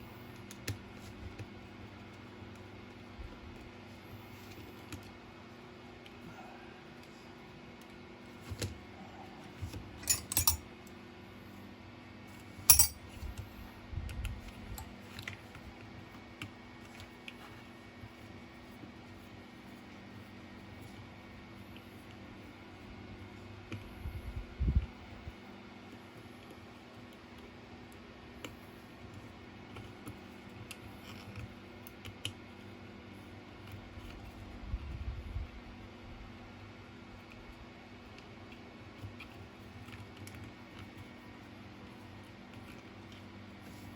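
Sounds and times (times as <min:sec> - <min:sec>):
steady low hum: 0:00.0 - 0:43.9
metallic clicks of small tools: 0:10.0 - 0:10.6, 0:12.7 - 0:13.0.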